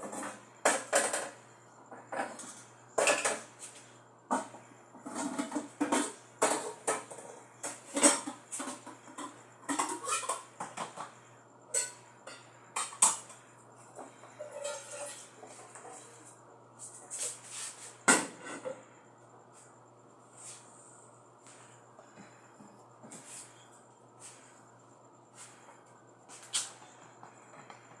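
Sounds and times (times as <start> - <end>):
clinking metal and crockery: 11.7 - 13.3.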